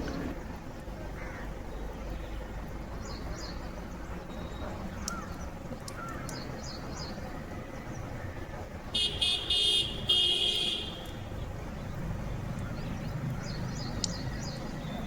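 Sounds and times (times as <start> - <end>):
high-pitched vehicle horn honks: 9.0 - 11.2.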